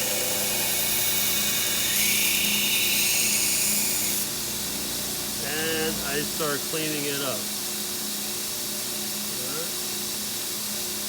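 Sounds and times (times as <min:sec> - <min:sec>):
belt sander grinding metal: 0:00.0 - 0:04.3.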